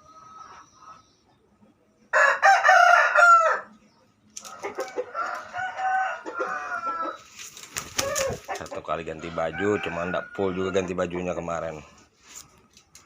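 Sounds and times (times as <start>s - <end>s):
rooster crowing: 2.1s - 3.7s, 4.5s - 7.2s, 9.2s - 11.0s.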